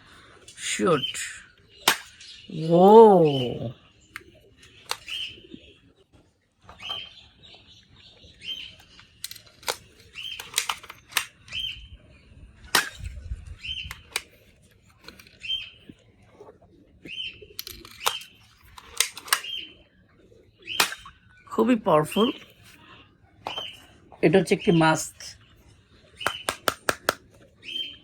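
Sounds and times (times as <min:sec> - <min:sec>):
bird chirping: 0:00.0 - 0:28.0
sharp clicks: 0:04.1 - 0:05.3, 0:08.8 - 0:11.6, 0:13.8 - 0:14.3, 0:17.6 - 0:19.6, 0:20.8 - 0:21.1, 0:26.2 - 0:27.4.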